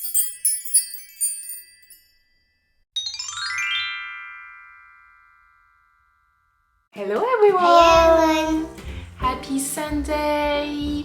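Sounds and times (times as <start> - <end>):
tinkling chime jingle: 0.0 - 6.5
upward run of bell-like chimes: 0.0 - 6.9.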